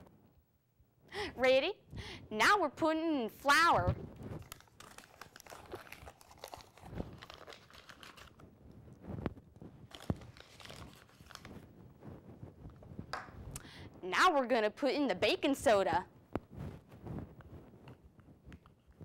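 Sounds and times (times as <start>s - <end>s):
flour bag rustling: 4.0s - 12.0s.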